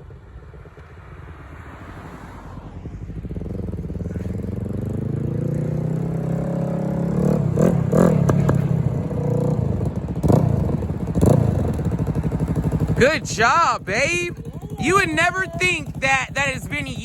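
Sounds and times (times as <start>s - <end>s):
motorcycle engine approaching: 0.0s - 17.0s.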